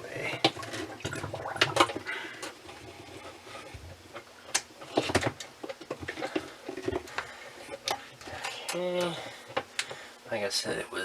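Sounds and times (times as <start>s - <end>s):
knocks and scrapes handling pump: 0.3s - 8.5s.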